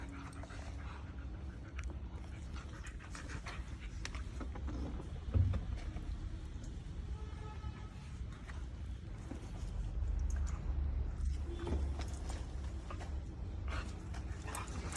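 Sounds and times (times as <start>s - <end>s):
dogs panting: 0.0s - 5.1s, 8.6s - 14.9s.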